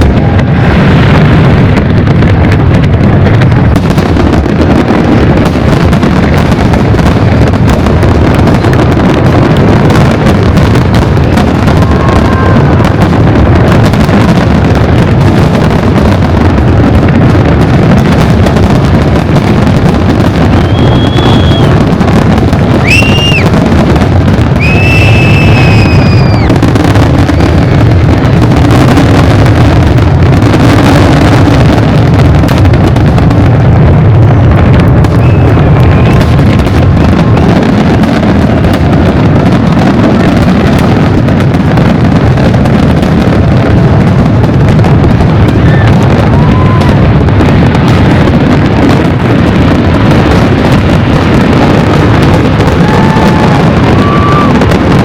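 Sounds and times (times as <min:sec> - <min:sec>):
fireworks exploding: 0:00.0 - 0:55.0
high whistling tones: 0:20.6 - 0:21.7, 0:22.8 - 0:23.4, 0:24.6 - 0:26.4, 0:35.2 - 0:36.2.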